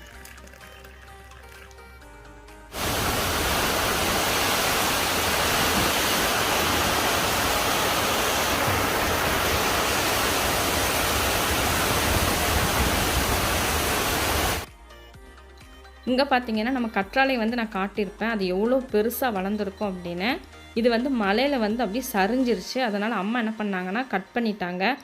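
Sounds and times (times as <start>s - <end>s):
heavy rain falling: 2.7s - 14.7s.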